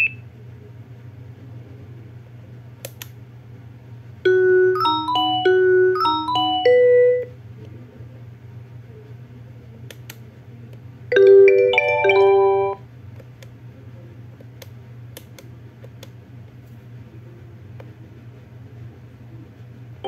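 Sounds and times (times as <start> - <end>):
phone ringtone chime melody: 4.3 - 7.3, 11.1 - 12.8.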